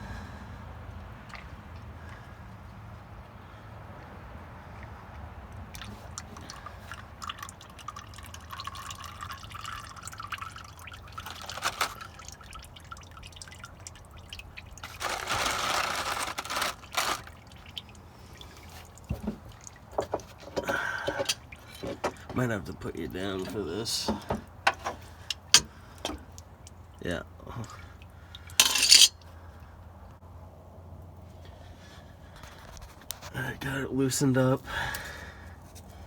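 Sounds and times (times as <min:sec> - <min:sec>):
oil dripping into a pan: 0:04.7 - 0:15.0, 0:16.8 - 0:22.4, 0:27.7 - 0:28.6.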